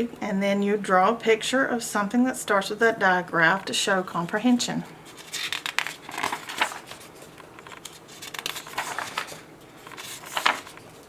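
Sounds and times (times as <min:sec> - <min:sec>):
paper pages rustling: 0:03.6 - 0:11.0.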